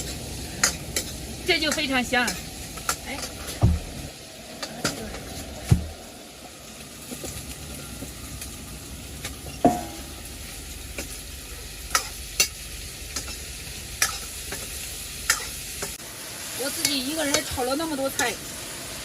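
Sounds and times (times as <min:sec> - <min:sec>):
food sizzling in a pan: 0:00.0 - 0:19.0
utensil knocking against pan: 0:09.7 - 0:10.1.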